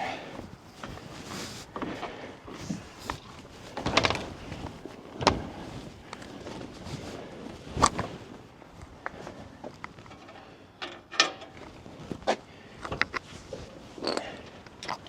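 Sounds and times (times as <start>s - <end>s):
tools knocking and clattering: 3.1s - 5.6s, 10.0s - 11.8s.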